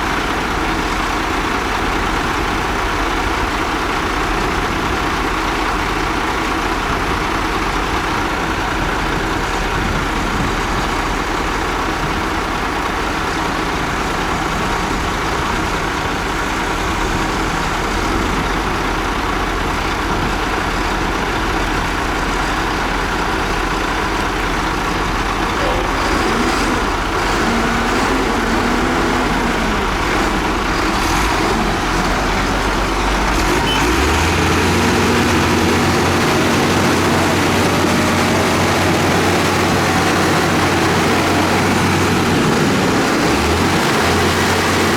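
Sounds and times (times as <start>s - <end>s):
heavy diesel engine running: 0.0s - 44.9s.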